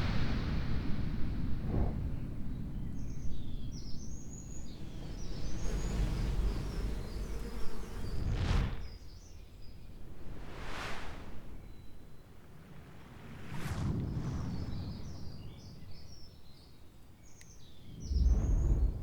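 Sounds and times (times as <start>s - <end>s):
brief whooshes: 0.0s - 3.5s, 4.6s - 12.4s, 17.9s - 19.0s
wind rumbling on microphone: 0.0s - 19.0s
small birds chirping: 2.2s - 10.2s, 14.5s - 19.0s.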